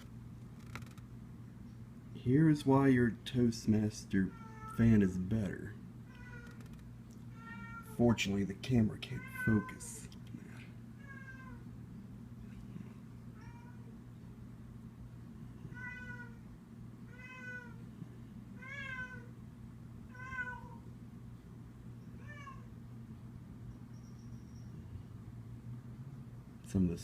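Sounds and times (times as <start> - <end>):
steady low hum: 0.0 - 27.0
cat meowing: 7.4 - 8.0, 9.2 - 9.9, 11.0 - 11.6, 15.7 - 16.4, 17.1 - 17.8, 18.6 - 19.3, 20.1 - 20.8, 22.2 - 22.7.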